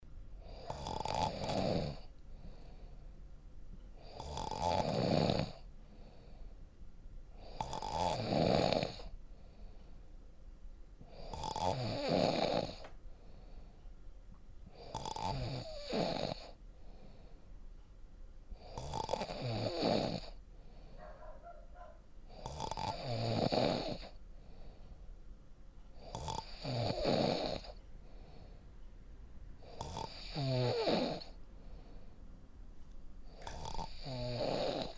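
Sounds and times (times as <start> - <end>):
person snoring: 0.4 - 2.1, 4.0 - 5.7, 7.4 - 9.1, 11.1 - 12.8, 14.8 - 16.6, 18.6 - 20.4, 22.3 - 24.2, 26.0 - 27.8, 29.6 - 31.4, 33.4 - 34.9.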